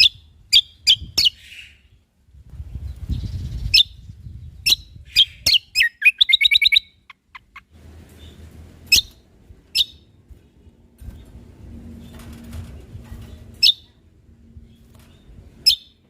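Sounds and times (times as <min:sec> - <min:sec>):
bird chirping and trilling: 0:02.7 - 0:10.1, 0:13.6 - 0:14.0, 0:14.6 - 0:16.0.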